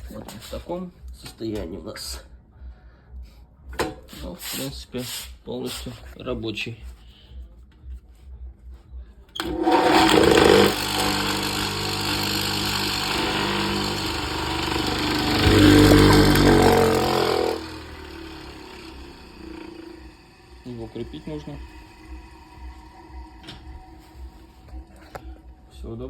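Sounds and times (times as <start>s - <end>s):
machine tool motor whirring: 9.4s - 25.3s.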